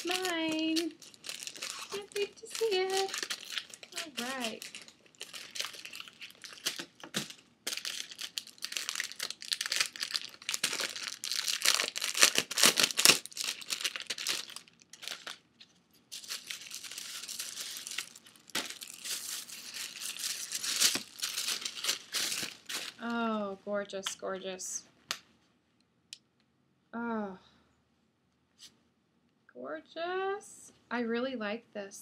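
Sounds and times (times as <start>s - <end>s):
packaging rustling: 0.0s - 23.1s.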